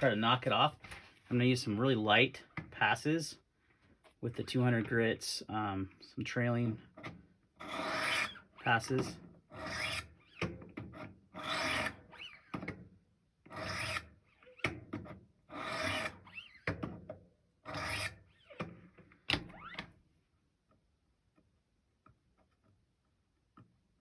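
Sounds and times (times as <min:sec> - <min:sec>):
knife scraping on sharpening stone: 0:07.6 - 0:08.4
small squeaks: 0:13.8 - 0:14.7, 0:15.8 - 0:16.7, 0:17.8 - 0:18.6, 0:19.5 - 0:19.9.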